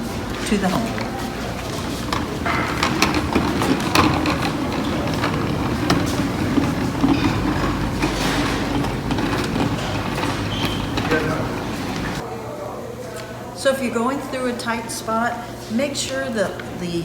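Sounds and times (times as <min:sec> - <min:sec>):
cart casters rolling across floor: 0:00.0 - 0:12.2.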